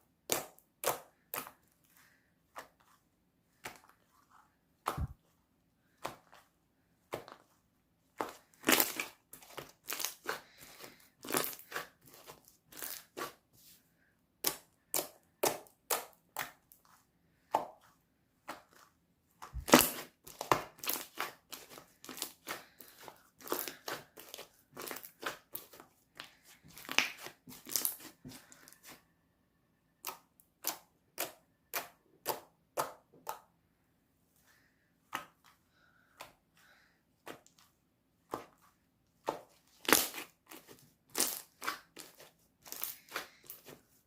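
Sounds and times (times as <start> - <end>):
slime crackling and popping: 8.6 - 9.1, 19.6 - 25.8, 26.8 - 28.1, 39.8 - 43.6.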